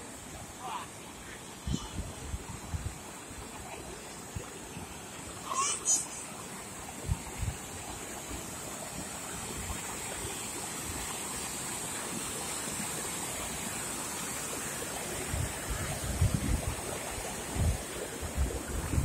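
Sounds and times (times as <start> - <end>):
wind buffeting microphone: 15.3 - 19.0.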